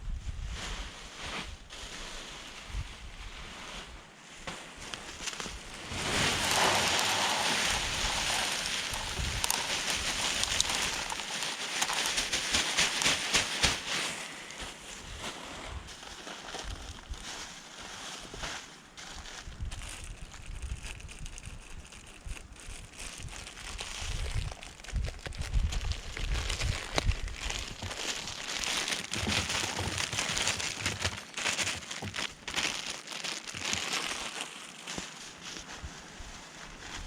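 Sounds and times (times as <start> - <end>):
rustling and crackling: 0.6 - 37.0
low rumbling on microphone: 5.6 - 11.3.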